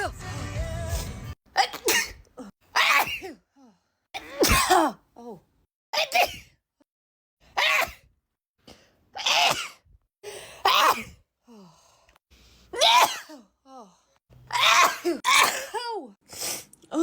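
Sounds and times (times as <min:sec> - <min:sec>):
person sneezing: 0:04.2 - 0:05.0.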